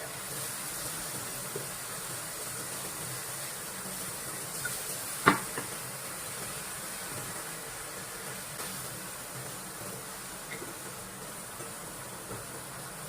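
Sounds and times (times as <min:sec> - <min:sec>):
steady hiss: 0:00.0 - 0:13.0
sharp knock: 0:05.3 - 0:05.6.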